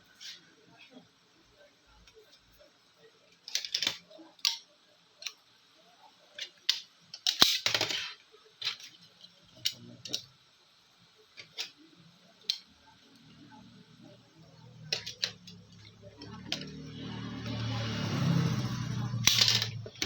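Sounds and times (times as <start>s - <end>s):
small tools clicking and tapping: 3.3s - 5.4s, 6.3s - 10.3s, 11.3s - 11.8s, 12.4s - 12.7s, 14.7s - 17.8s, 19.0s - 20.0s
parts clattering: 6.4s - 9.0s, 14.8s - 17.6s, 19.2s - 20.0s.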